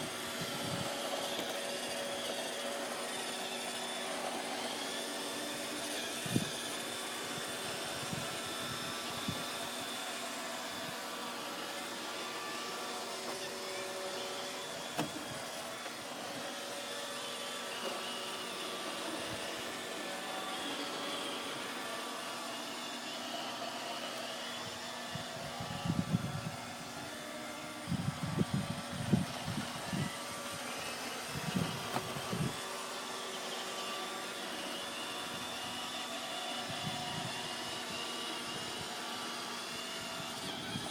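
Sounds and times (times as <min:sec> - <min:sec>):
robot vacuum humming: 0:00.0 - 0:40.9
vacuum knocking into things: 0:14.8 - 0:16.0.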